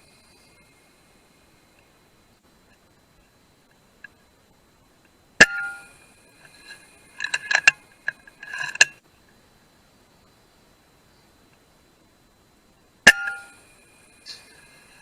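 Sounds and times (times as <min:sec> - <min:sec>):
metal ringing: 0:05.4 - 0:06.0, 0:13.1 - 0:13.6.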